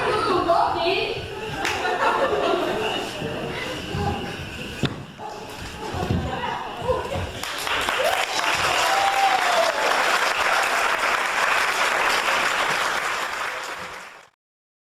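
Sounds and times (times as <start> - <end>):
audience applauding: 7.4 - 14.4.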